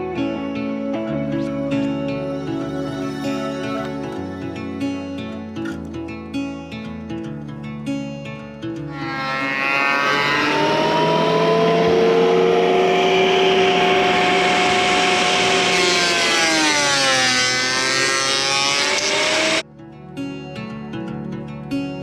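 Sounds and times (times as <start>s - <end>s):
chainsaw cutting wood: 9.0s - 19.6s.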